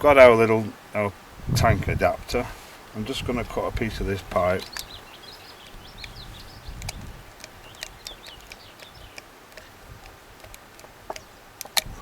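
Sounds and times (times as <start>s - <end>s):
small birds chirping: 0.0s - 12.0s
faint clicks: 4.6s - 5.0s, 5.6s - 11.9s.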